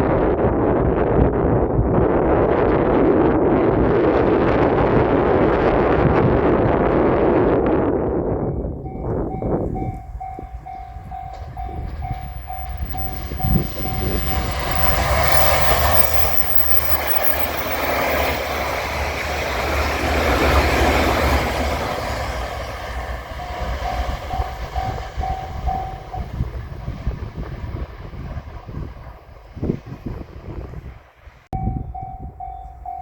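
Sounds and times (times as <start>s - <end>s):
electric train rumbling past: 0.1s - 33.0s
level crossing warning bell: 8.6s - 19.6s, 23.2s - 26.6s, 31.6s - 33.0s.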